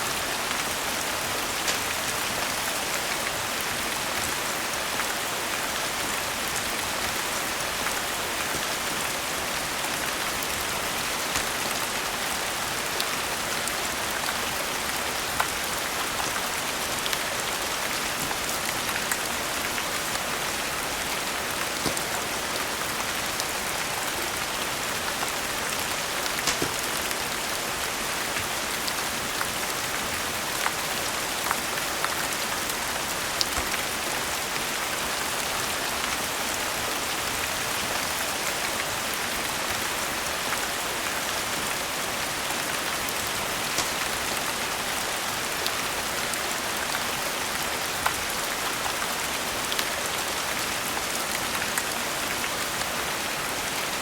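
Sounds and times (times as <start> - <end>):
steady rain: 0.0 - 54.0
wood fire crackling: 1.0 - 2.6, 25.0 - 29.0, 43.5 - 44.4.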